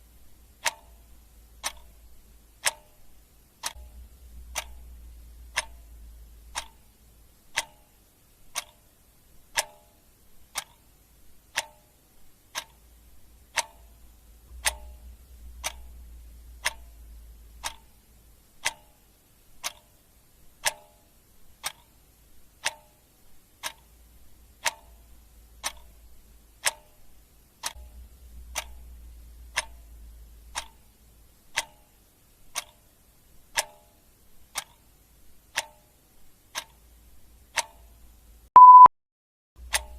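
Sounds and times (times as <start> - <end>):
clock ticking: 0.0 - 38.9, 39.6 - 39.9
faint low hum: 0.0 - 38.9.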